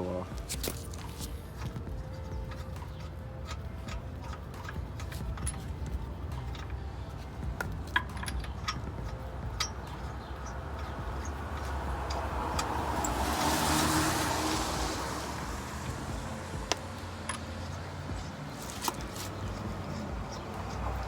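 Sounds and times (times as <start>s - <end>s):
steady low rumble: 0.0s - 21.0s
vehicle passing by: 8.6s - 21.0s.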